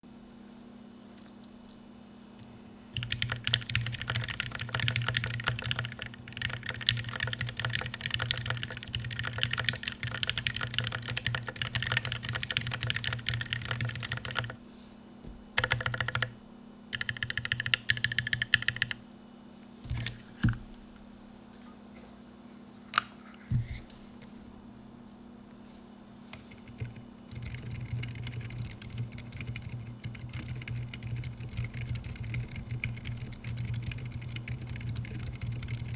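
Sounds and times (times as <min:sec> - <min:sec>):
mechanical keyboard typing: 0:03.0 - 0:14.6, 0:15.6 - 0:19.0, 0:26.5 - 0:35.9.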